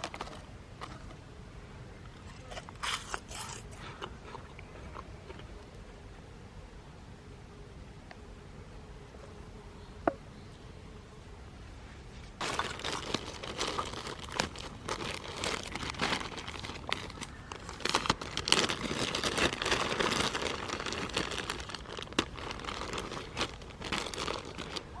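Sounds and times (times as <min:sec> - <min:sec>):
crinkling and crumpling: 0:00.0 - 0:01.2, 0:02.1 - 0:05.8, 0:12.1 - 0:25.0.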